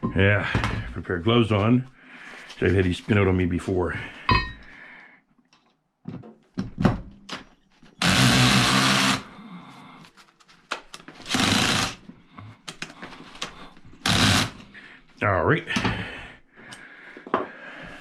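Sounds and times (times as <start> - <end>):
power drill running: 8.0 - 9.3, 11.3 - 12.0, 14.0 - 14.7.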